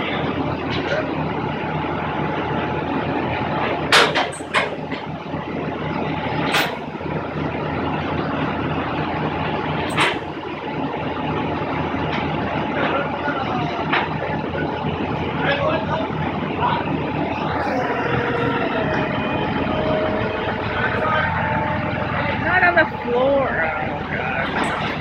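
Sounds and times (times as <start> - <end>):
vehicle interior road noise: 13.7 - 25.0.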